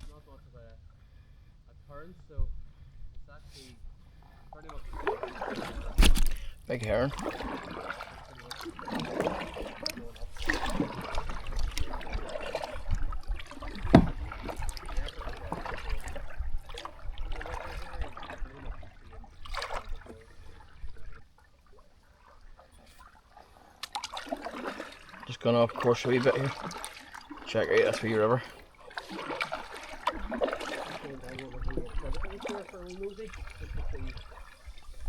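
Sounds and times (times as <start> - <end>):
paddle swishing in water: 0.0 - 35.0
water splashing and dripping: 4.6 - 35.0
sharp knock: 6.0 - 6.4.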